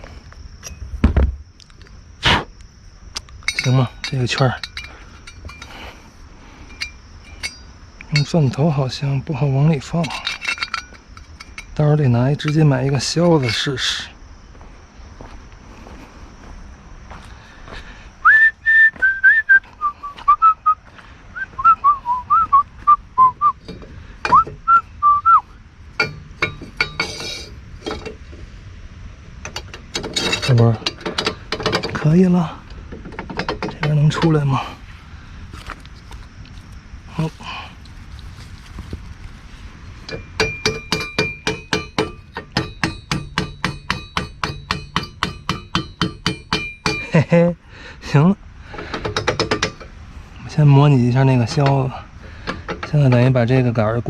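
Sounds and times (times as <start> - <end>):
person whistling a tune: 18.2 - 23.6, 24.3 - 25.5
hammer striking metal: 26.0 - 27.5, 40.1 - 47.2
clicks and knocks: 29.4 - 32.1, 32.7 - 34.4.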